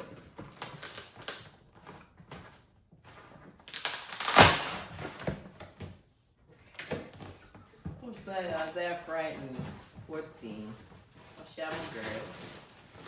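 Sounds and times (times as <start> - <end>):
packaging crinkling and crunching: 0.0 - 5.2, 10.9 - 13.0
cardboard packaging rustling: 0.0 - 13.0.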